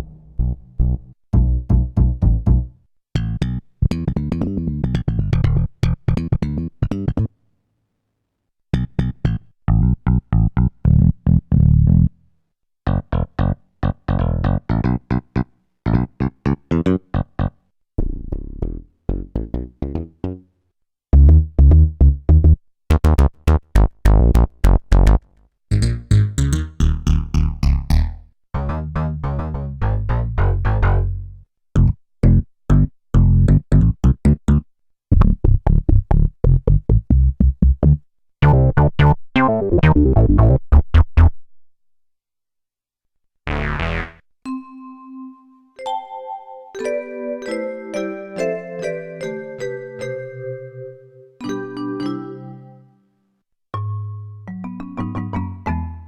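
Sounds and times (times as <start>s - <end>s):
heavy synth bass: 27.9s - 31.1s, 38.4s - 41.3s, 43.5s - 44.2s
synthesizer short repeated notes: 38.4s - 41.3s, 43.5s - 44.2s.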